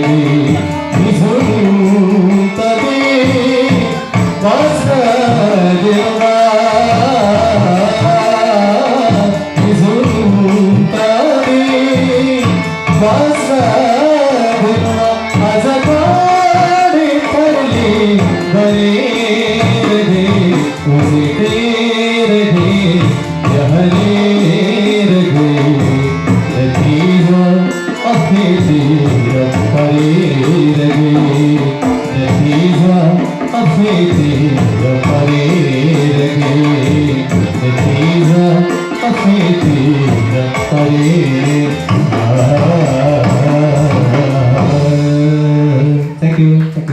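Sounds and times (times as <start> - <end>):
hand drums: 0.0 - 46.9
instrumental accompaniment: 0.0 - 46.9
man singing: 0.0 - 46.9.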